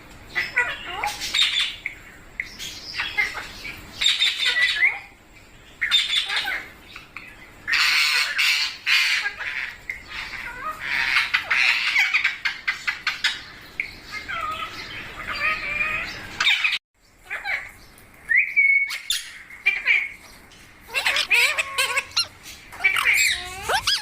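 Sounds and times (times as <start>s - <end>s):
parrot squawking: 0.4s - 1.8s, 3.0s - 5.1s, 7.7s - 13.4s, 14.1s - 17.7s, 20.8s - 24.0s.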